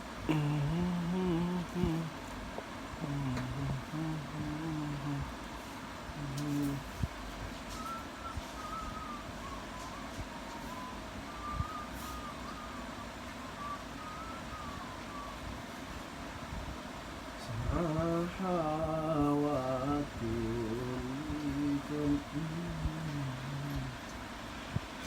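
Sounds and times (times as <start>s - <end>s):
man humming a melody: 0.0s - 2.3s, 3.0s - 12.8s, 17.4s - 25.0s
steady background hum: 0.0s - 25.0s.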